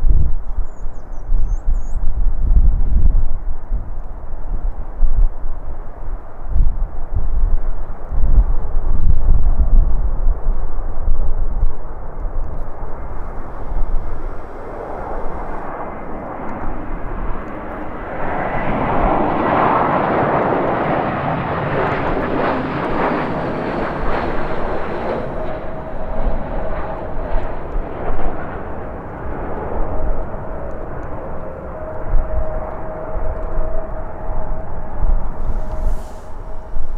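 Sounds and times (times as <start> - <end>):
wind buffeting microphone: 0.0 - 36.9
jet airliner passing: 11.8 - 36.9.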